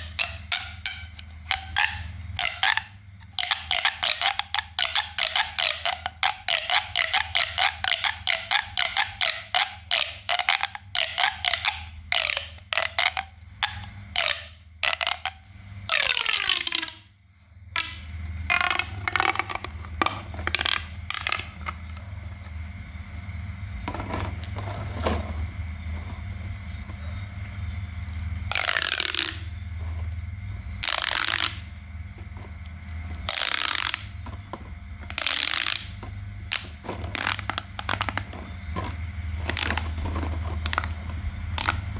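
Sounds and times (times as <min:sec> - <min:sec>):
low steady hum: 0:00.0 - 0:41.9
scraping and rustling: 0:38.2 - 0:41.9.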